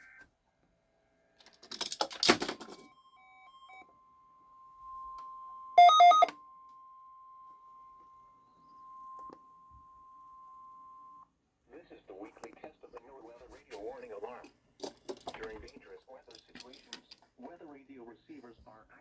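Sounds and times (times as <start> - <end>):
steady warning alarm tone: 3.0 - 11.2
quick electronic beeps: 5.8 - 6.3.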